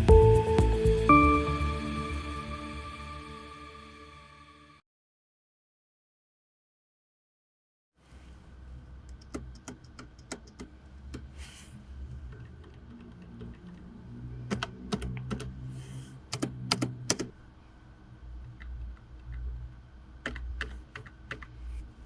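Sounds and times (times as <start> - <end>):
keyboard space bar clacks: 9.1 - 11.3, 12.3 - 15.6, 16.3 - 17.3.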